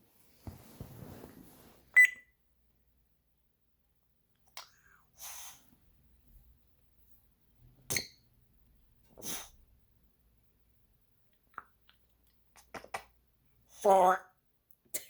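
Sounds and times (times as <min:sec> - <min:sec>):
parrot sneeze-like noises: 0:09.2 - 0:09.6.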